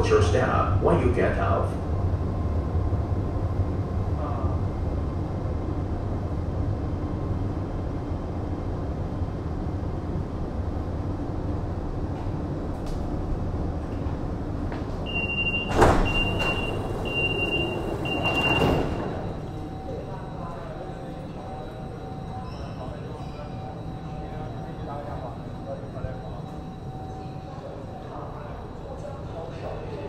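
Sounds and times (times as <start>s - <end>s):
train low rumble: 0.0s - 30.0s
sliding doors closing: 13.8s - 19.8s
door warning tone beeps: 15.0s - 28.4s.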